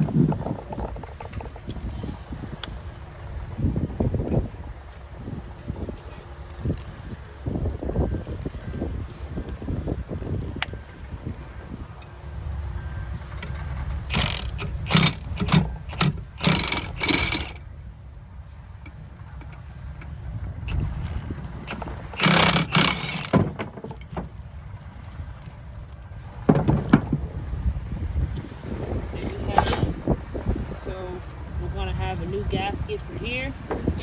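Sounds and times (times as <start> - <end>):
clattering and rustling of parts: 13.4 - 17.6, 18.4 - 25.6, 26.5 - 27.4, 28.4 - 30.0.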